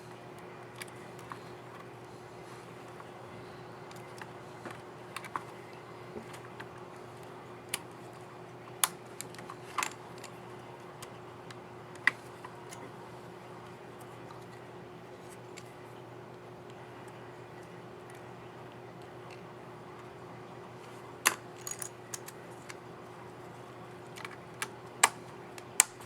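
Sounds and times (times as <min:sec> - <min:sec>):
faint steady hum: 0:00.0 - 0:26.0
plastic keyboard key clicks: 0:25.0 - 0:26.0.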